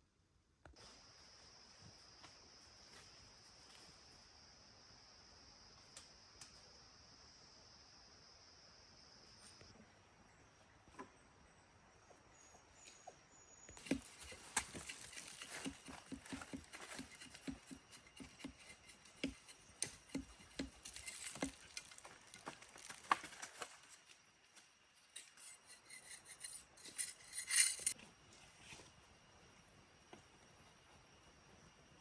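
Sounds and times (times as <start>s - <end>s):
clinking: 13.8s - 22.0s, 25.2s - 28.0s
rustling: 13.8s - 24.2s, 25.2s - 28.0s.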